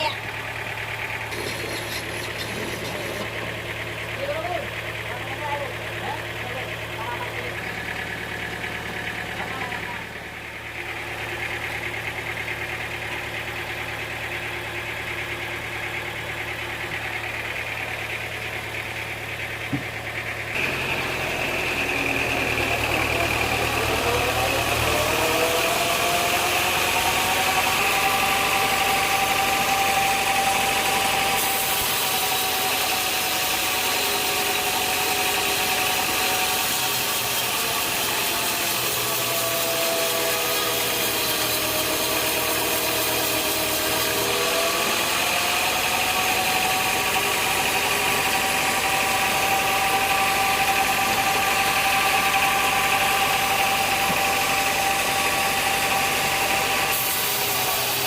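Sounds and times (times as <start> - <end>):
sawmill engine running: 0.0 - 58.0
rising whine: 19.7 - 31.4.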